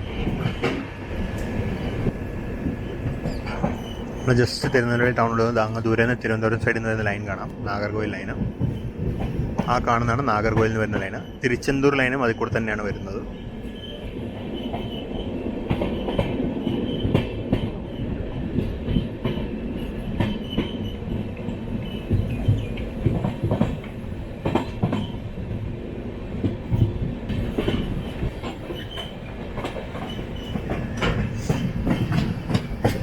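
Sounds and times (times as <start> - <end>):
train rumbling on track: 0.0 - 33.0
wheels clattering over rail joints: 26.4 - 33.0.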